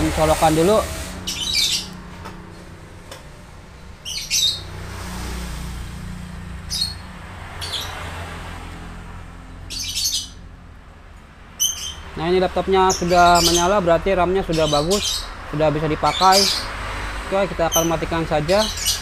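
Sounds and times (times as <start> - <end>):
bird chirping: 1.2 - 2.1, 4.0 - 4.9, 6.6 - 8.2, 9.6 - 10.5, 11.6 - 16.9, 17.6 - 19.0.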